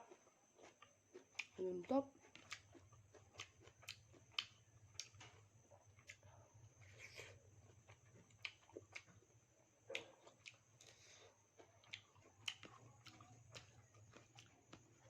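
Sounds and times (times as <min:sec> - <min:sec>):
chewing and biting: 0:00.0 - 0:15.0
faint steady hum: 0:00.0 - 0:15.0.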